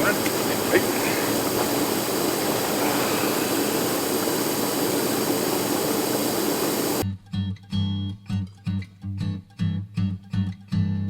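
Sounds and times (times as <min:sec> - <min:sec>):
loud rushing noise: 0:00.0 - 0:07.0.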